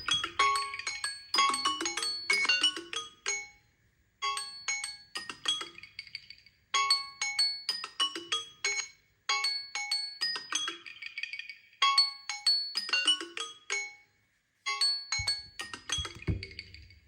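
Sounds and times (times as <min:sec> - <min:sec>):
phone alarm chiming melody: 0:00.0 - 0:02.8, 0:14.7 - 0:16.7.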